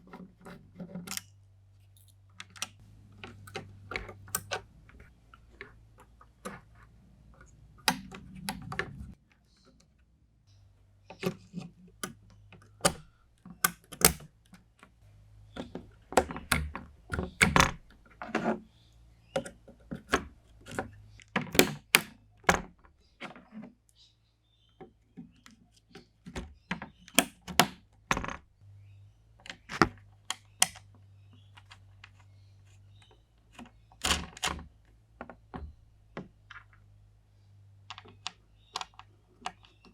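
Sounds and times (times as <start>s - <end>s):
computer parts clicking and tapping: 2.0s - 6.8s, 11.2s - 14.3s, 15.5s - 18.6s, 19.4s - 22.8s.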